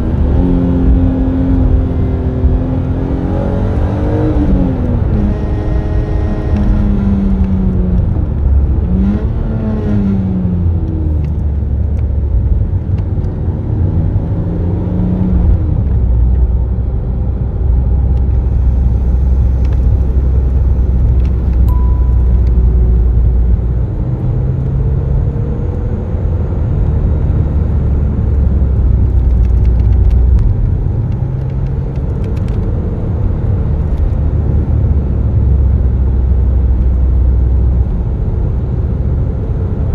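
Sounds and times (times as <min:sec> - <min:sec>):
car engine revving: 0:18.1 - 0:25.4.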